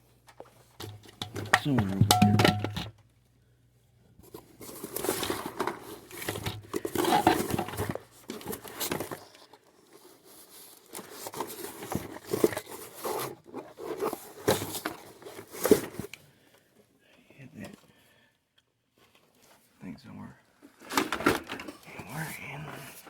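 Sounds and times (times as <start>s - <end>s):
rummaging through items: 0.3s - 3.0s, 4.2s - 16.9s, 20.7s - 23.0s.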